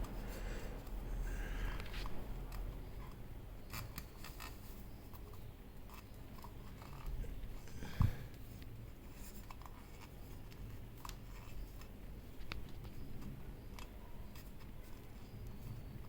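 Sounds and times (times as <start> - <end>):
small clicks and taps of parts: 8.3 - 15.6.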